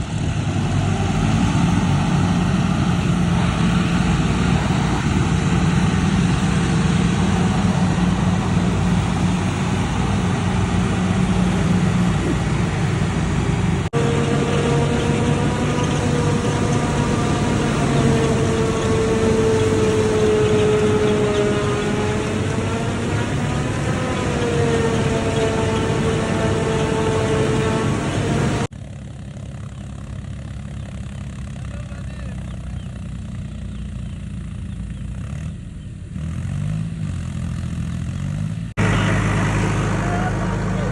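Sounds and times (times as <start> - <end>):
steady whine: 0.0 - 29.1
farm machinery engine running: 0.0 - 40.9.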